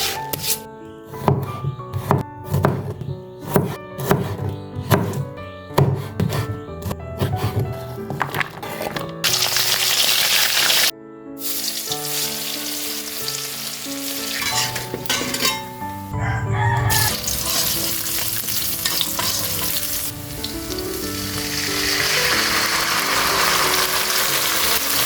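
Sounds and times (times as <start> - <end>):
background music: 0.0 - 25.0
food sizzling in oil: 9.2 - 16.1, 16.9 - 25.0.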